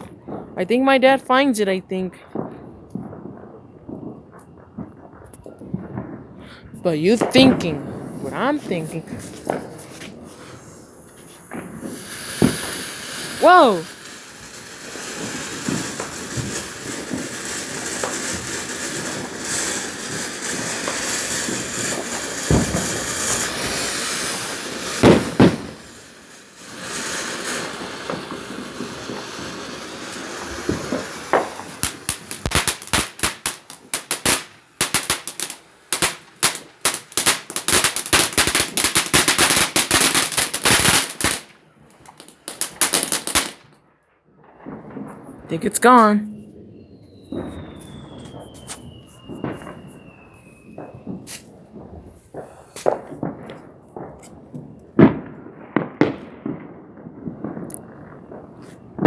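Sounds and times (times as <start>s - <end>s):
firework crackling bangs: 0.0s - 0.6s, 2.2s - 59.0s
firework bangs: 2.2s - 59.0s
firework hissing: 6.8s - 43.7s, 47.3s - 51.6s.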